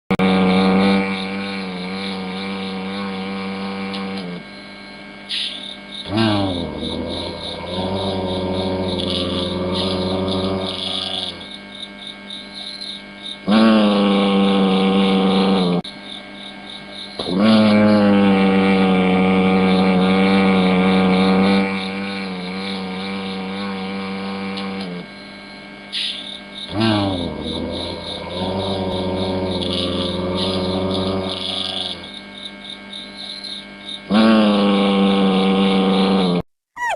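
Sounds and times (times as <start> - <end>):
panda snoring: 0.1 - 4.4, 6.1 - 11.5, 13.4 - 15.8, 17.2 - 25.1, 26.7 - 32.1, 34.1 - 36.9.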